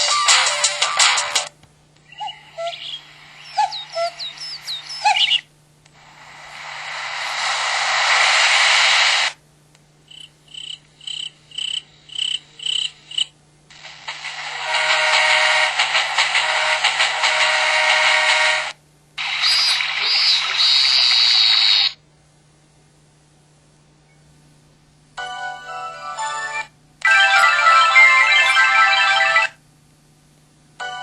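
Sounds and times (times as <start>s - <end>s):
ringtone music: 0.0s - 1.5s, 25.2s - 29.6s
bird-like electronic chirps: 2.0s - 5.4s, 19.3s - 21.9s
rush of noise: 6.0s - 9.4s, 13.8s - 21.9s.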